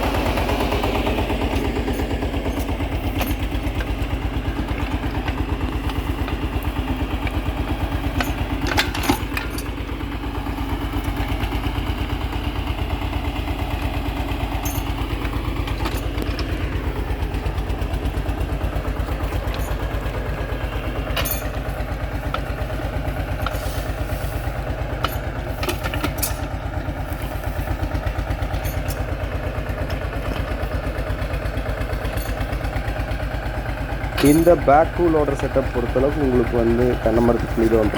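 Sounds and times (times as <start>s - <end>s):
diesel engine running: 0.0s - 37.9s.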